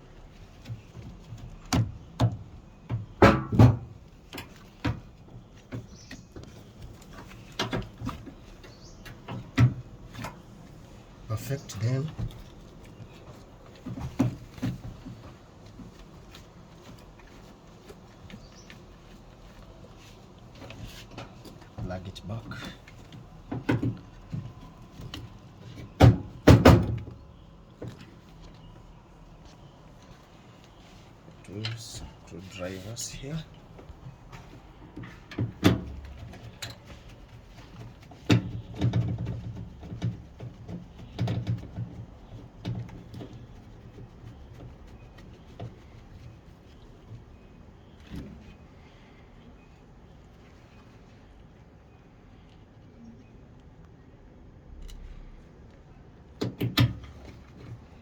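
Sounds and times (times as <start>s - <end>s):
loud knocks: 3.2s - 3.9s.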